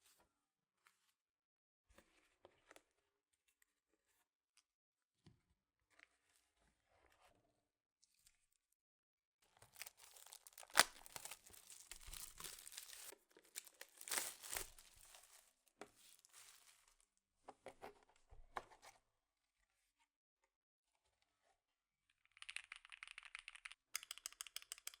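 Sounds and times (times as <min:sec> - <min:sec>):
packaging crinkling and tearing: 0:09.6 - 0:16.8.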